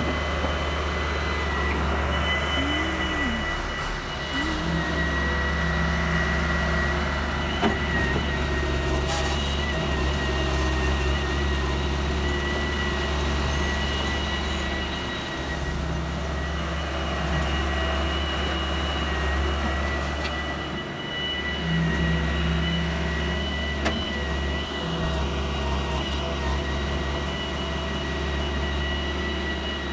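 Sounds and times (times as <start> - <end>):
thin steady whine: 0.0 - 8.3
heavy machinery engine running: 0.0 - 29.9.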